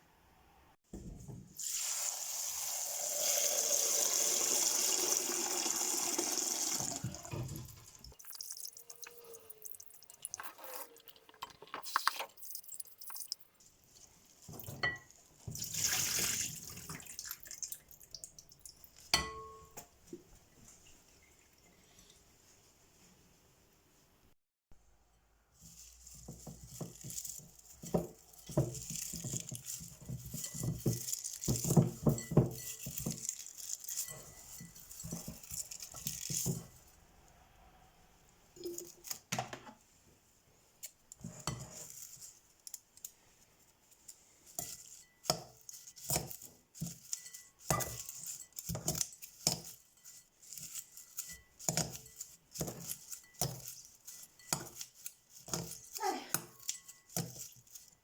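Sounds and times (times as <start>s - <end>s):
dishes and cutlery clinking: 18.6s - 20.0s, 26.3s - 36.8s, 44.1s - 58.0s.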